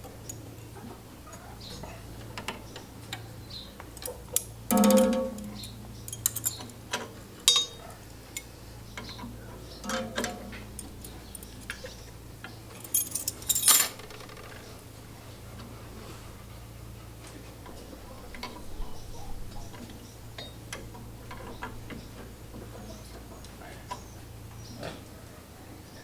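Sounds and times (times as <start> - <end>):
metal tools clinking: 4.0 - 6.8, 7.5 - 8.5, 9.8 - 11.9, 12.7 - 14.4.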